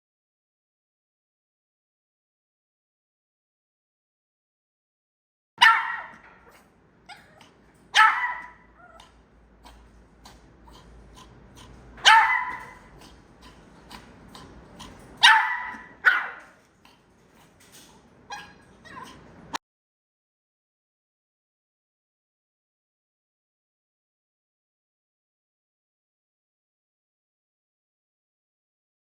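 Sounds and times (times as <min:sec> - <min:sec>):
dog coughing harshly: 0:05.6 - 0:19.4.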